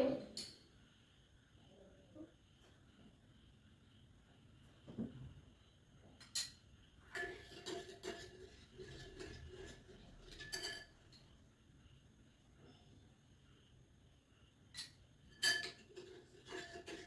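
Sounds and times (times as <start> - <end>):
spoon clinking against bowl: 14.8 - 17.0.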